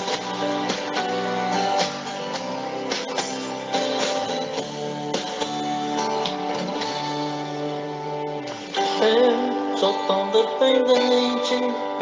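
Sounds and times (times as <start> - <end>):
percussion hits: 0.0 - 7.1
guitar-led band music: 0.0 - 12.0.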